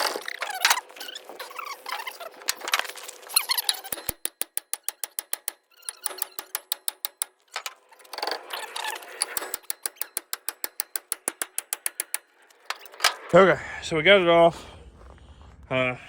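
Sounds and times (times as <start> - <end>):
scraping squeaky metal: 0.0 - 13.4
ratchet wrench clicking: 3.4 - 13.4.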